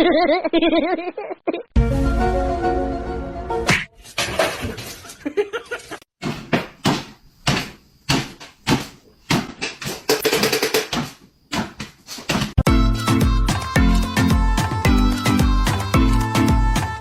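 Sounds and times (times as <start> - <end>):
repeated knocks: 6.2 - 12.6.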